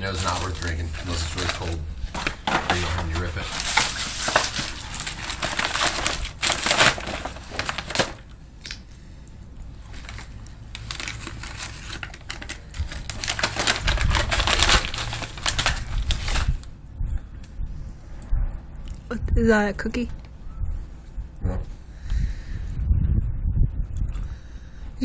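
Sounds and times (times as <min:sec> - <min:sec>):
plastic packaging crinkling: 0:00.0 - 0:08.8, 0:09.8 - 0:16.7.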